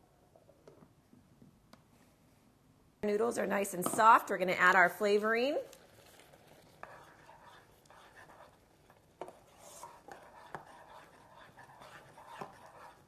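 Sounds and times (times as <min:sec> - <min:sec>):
utensil tapping and scraping pot: 0:05.6 - 0:13.0.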